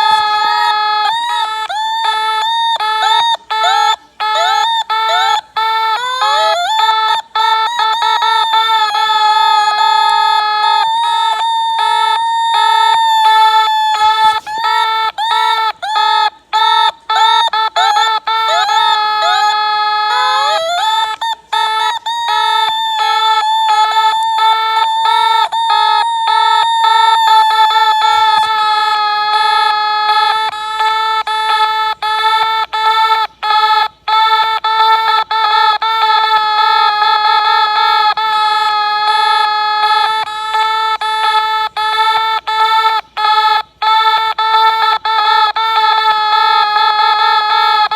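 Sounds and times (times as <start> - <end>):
steady high alarm tone: 0.0 - 33.3.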